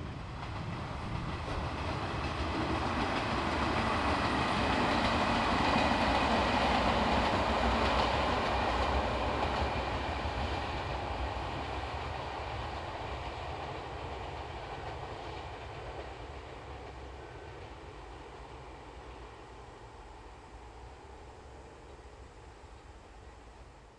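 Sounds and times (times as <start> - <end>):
electric train running: 0.0 - 11.3.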